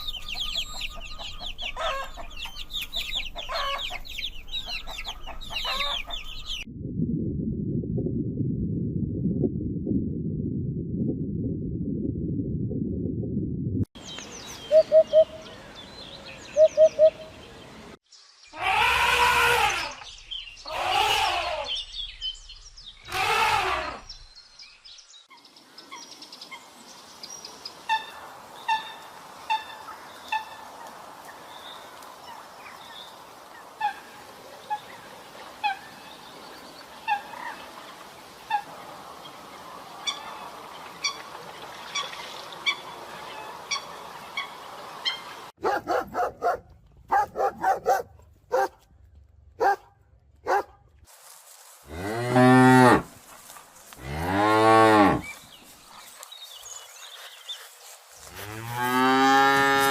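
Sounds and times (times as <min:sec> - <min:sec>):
poultry drawn-out calls: 0:00.2 - 0:06.4, 0:18.5 - 0:20.0, 0:20.6 - 0:21.8, 0:23.1 - 0:24.2, 0:33.8 - 0:35.0, 0:35.6 - 0:36.1, 0:37.0 - 0:37.8, 0:38.4 - 0:38.9, 0:40.0 - 0:45.5.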